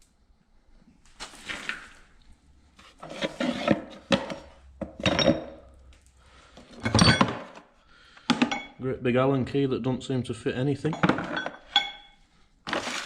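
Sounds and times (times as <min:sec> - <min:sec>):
metal tools scraping and clattering: 0:02.8 - 0:05.8, 0:06.6 - 0:07.7, 0:08.3 - 0:08.8, 0:10.8 - 0:13.0.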